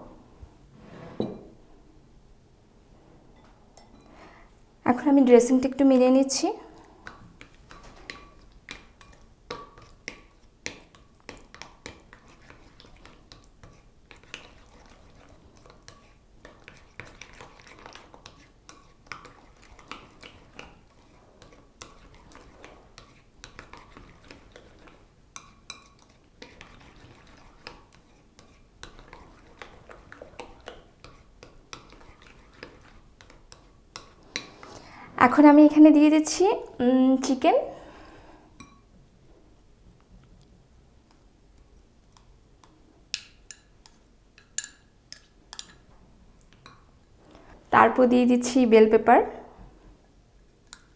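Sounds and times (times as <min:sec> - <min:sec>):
utensil scraping in bowl: 0:09.8 - 0:35.4.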